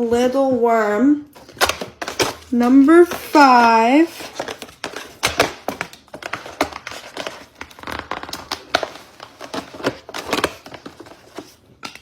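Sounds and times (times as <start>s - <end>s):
plastic packaging crinkling: 1.3s - 12.0s.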